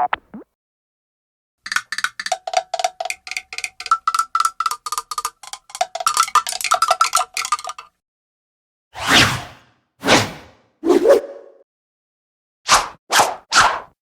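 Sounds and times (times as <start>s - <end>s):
metallic percussion notes: 1.7s - 7.9s.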